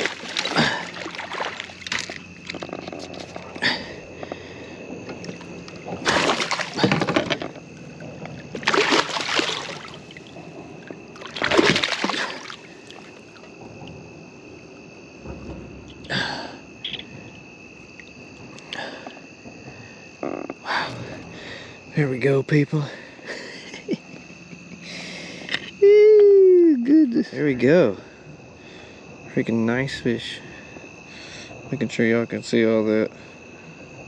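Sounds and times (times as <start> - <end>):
fish splashing at surface: 0.0 - 3.6, 5.2 - 7.7, 8.4 - 13.5
insect chirring: 0.0 - 34.0.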